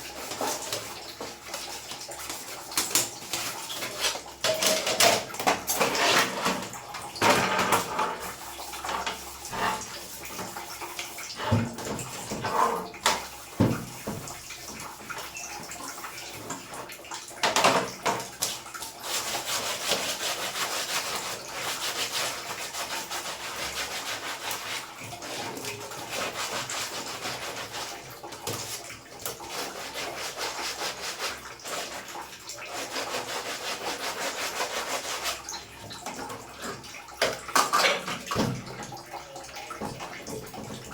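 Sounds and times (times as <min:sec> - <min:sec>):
water running and splashing: 0:00.0 - 0:40.9
steady water spray: 0:18.4 - 0:35.6.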